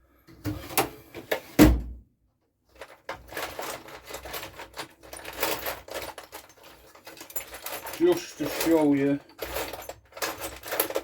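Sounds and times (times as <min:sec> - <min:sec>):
small parts clattering in container: 0:02.7 - 0:11.0.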